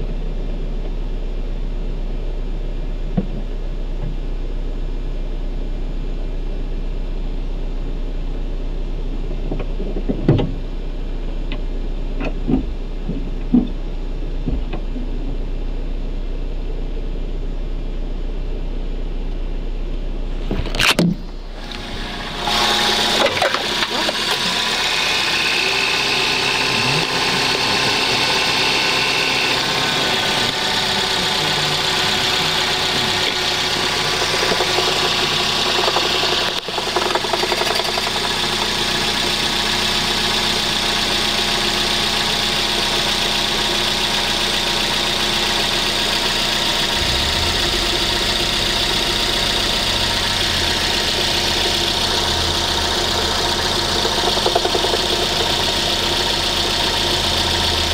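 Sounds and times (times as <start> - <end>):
car engine idling: 0.0 - 57.9
deep low hum: 0.0 - 57.9
rapid engine rattle: 20.4 - 57.9.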